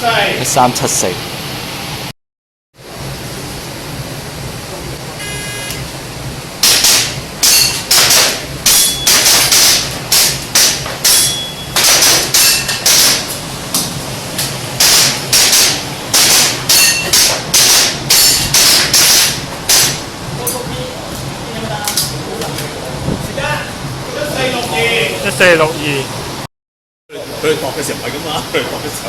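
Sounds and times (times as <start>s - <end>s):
airsoft pistol shots: 6.6s - 13.2s, 14.8s - 20.0s.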